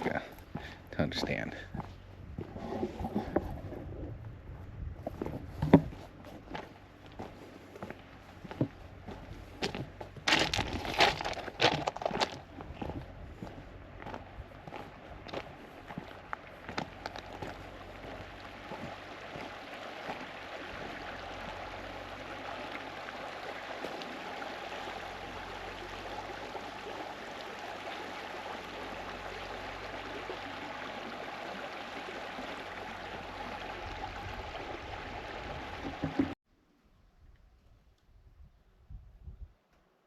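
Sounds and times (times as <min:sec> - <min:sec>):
stream water rushing: 0:05.6 - 0:36.4.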